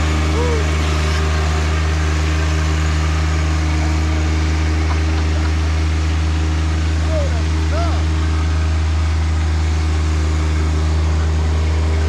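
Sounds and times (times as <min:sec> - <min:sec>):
tractor diesel engine running: 0:00.0 - 0:12.0.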